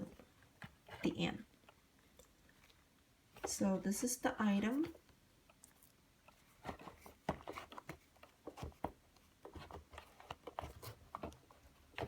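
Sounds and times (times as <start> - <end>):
wallet being handled: 6.2 - 12.0.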